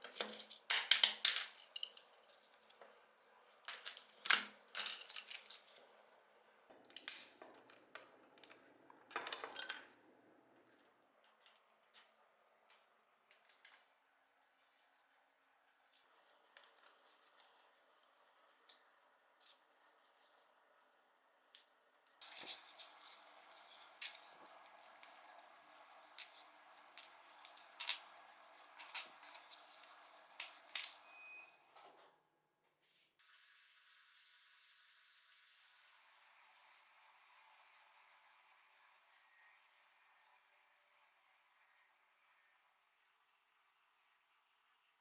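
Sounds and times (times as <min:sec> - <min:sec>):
small metal parts clicking: 0:00.0 - 0:02.9, 0:03.5 - 0:06.0, 0:06.7 - 0:09.9, 0:10.6 - 0:12.2, 0:15.7 - 0:17.8, 0:18.6 - 0:20.4, 0:21.9 - 0:25.5, 0:26.1 - 0:31.0.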